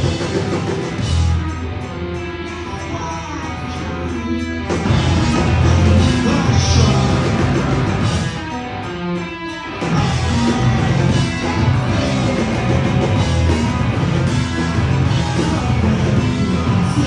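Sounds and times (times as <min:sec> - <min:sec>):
rock band playing live: 0:00.0 - 0:17.0.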